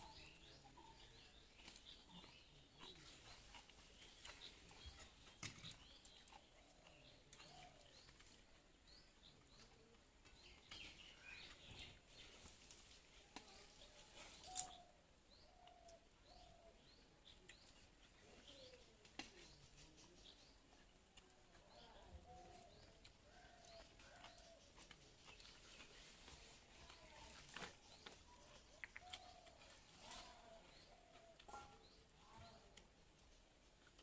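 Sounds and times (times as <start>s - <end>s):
small bird chirps: 13.4s - 32.8s.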